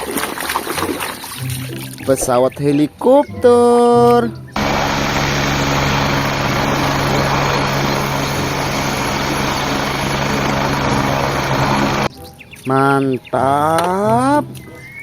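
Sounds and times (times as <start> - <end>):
helicopter rotor and turbine: 4.6 - 12.1
low even hum: 4.6 - 12.1.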